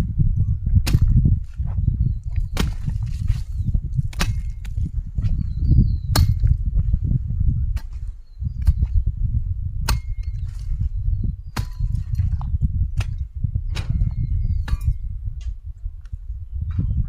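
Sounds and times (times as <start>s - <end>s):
steady low rumble: 0.0s - 17.0s
garden hoe chopping soil: 0.8s - 1.7s, 2.3s - 4.9s, 6.1s - 6.6s, 7.8s - 9.0s, 9.8s - 10.8s, 11.4s - 15.0s.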